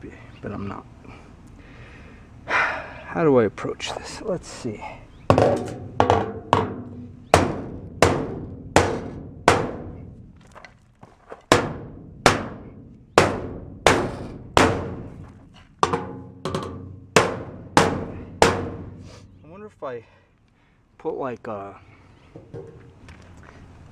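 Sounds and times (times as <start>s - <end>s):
hammer striking sheet metal: 5.3s - 9.9s, 13.2s - 15.0s, 15.8s - 18.9s.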